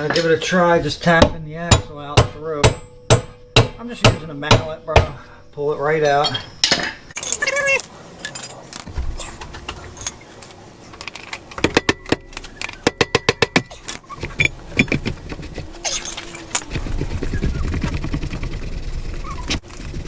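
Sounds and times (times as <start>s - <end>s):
metal parts clinking and rattling: 6.0s - 16.9s.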